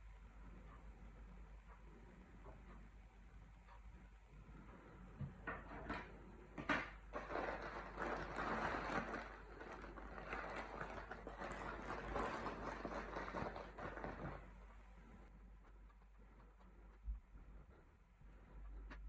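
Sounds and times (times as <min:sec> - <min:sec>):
scratchy scraping: 0:07.2 - 0:14.6.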